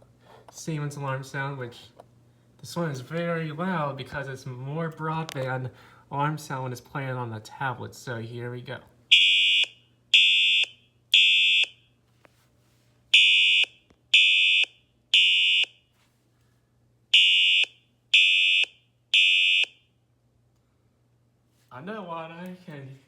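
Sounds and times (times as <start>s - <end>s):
buzzy fire alarm horn blasts: 9.1s - 12.0s, 13.1s - 16.0s, 17.1s - 20.0s.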